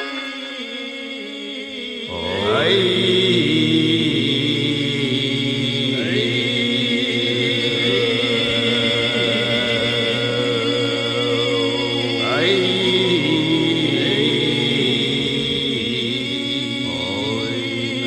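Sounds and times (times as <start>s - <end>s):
droning chant-like vocals: 0.0s - 18.0s.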